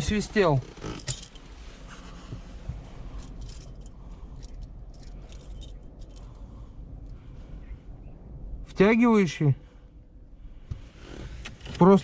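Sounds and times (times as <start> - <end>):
low steady hum: 0.0 - 12.0
light clinks and rattles: 0.8 - 1.5, 2.8 - 6.4.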